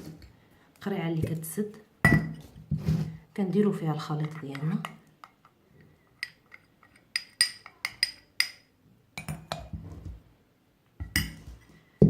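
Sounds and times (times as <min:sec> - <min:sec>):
handling and scraping sounds: 0:02.3 - 0:03.2.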